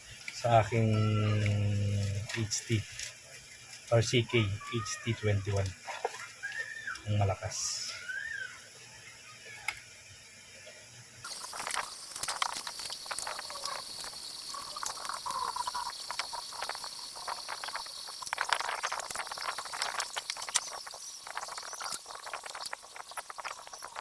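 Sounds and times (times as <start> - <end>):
faint high whine: 11.2 - 24.0
radio crackling and clicking: 11.2 - 24.0.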